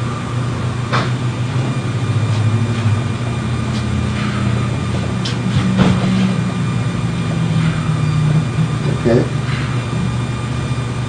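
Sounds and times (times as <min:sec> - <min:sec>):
low machine hum: 0:00.0 - 0:11.0.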